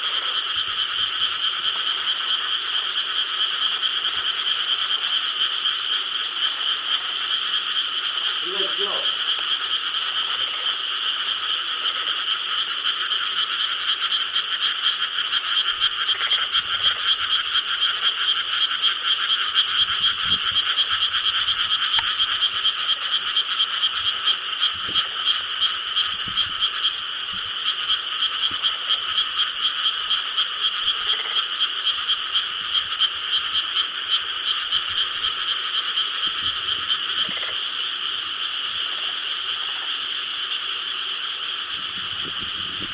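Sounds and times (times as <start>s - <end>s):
chorus of frogs croaking: 0.0s - 42.9s.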